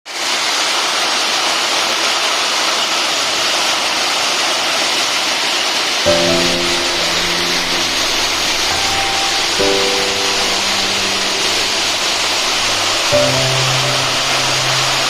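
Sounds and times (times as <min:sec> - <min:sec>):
music: 0:06.1 - 0:15.0.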